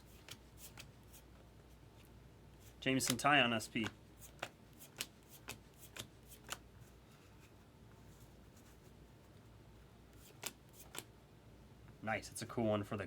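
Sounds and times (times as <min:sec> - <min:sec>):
trading cards snapping: 0:03.0 - 0:06.6, 0:10.2 - 0:11.1.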